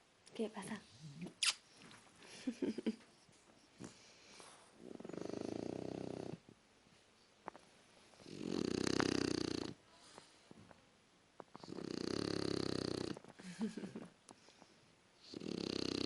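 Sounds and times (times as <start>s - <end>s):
snoring: 4.8s - 6.4s, 8.2s - 9.8s, 11.6s - 13.2s, 15.2s - 16.0s.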